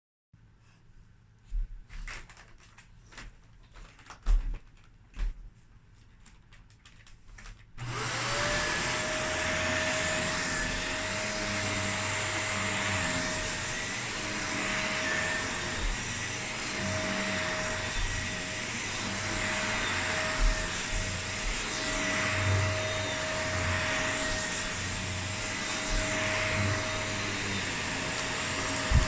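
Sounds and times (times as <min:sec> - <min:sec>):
vacuum cleaner running: 0:07.8 - 0:29.0.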